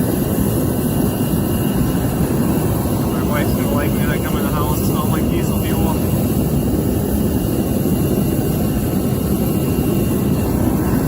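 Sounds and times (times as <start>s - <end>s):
heater deep rushing noise: 0.0s - 11.0s.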